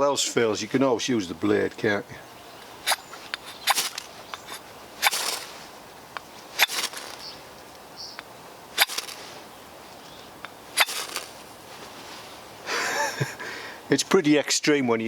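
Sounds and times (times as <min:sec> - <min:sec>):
blade scraping ferro rod: 0:02.8 - 0:05.6, 0:06.5 - 0:07.4, 0:08.2 - 0:09.4, 0:10.8 - 0:11.5.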